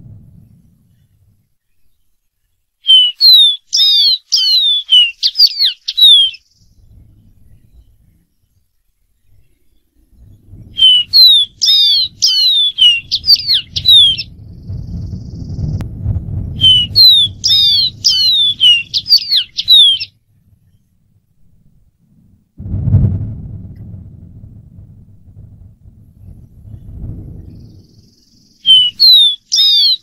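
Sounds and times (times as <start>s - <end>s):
faint low rumble: 0.0s - 2.8s, 6.4s - 19.1s, 20.1s - 28.7s
bird singing whistled notes: 0.1s - 15.8s, 16.5s - 20.9s, 27.4s - 30.0s.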